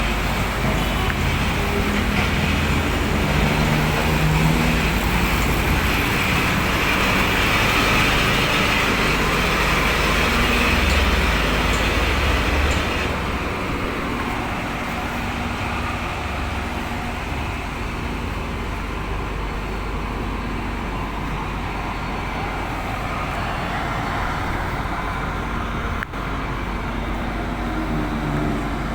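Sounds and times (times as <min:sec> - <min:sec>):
bulldozer diesel engine rumbling: 0:00.0 - 0:28.9.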